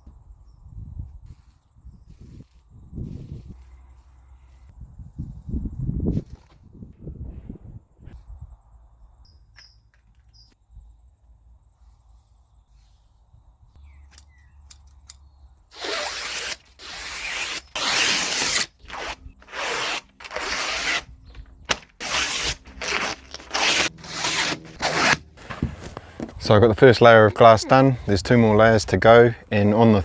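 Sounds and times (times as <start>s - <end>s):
harsh scraping strokes: 15.8s - 21.1s, 21.7s - 26.3s.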